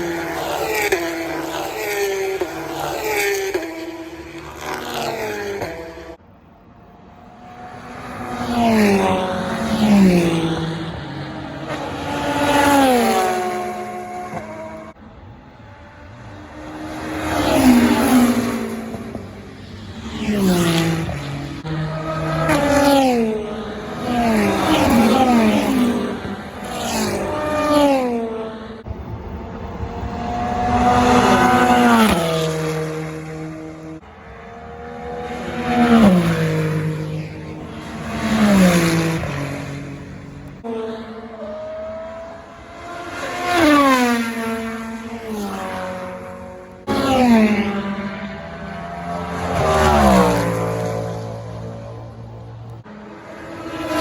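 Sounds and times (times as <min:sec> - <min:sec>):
race cars passing at speed: 0:00.0 - 0:54.0.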